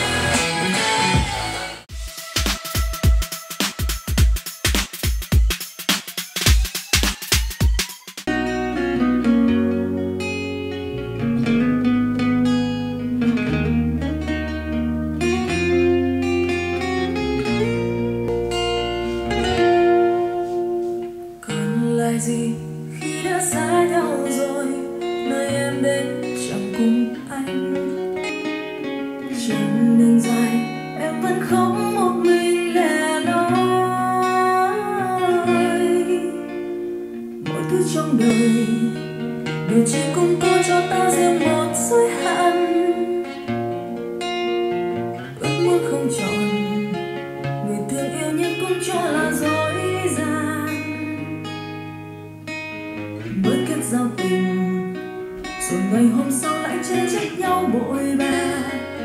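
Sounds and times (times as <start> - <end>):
bass line: 0.0 - 1.8, 8.3 - 21.2
acoustic guitar: 0.0 - 1.9, 8.2 - 59.0
person singing: 17.2 - 43.4, 45.4 - 47.0, 47.6 - 51.4, 53.2 - 59.0.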